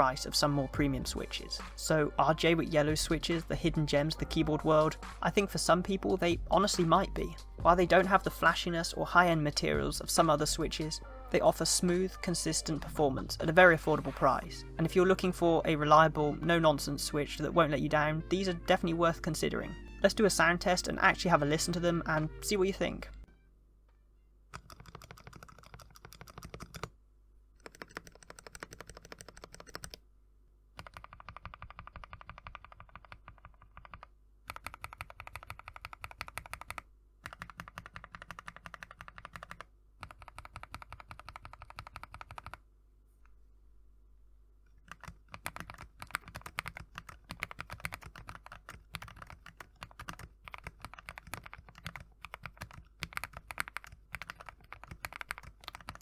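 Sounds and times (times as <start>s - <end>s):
fast typing on mechanical keyboard: 24.5s - 26.9s, 27.6s - 30.0s, 30.8s - 42.6s, 44.8s - 56.0s.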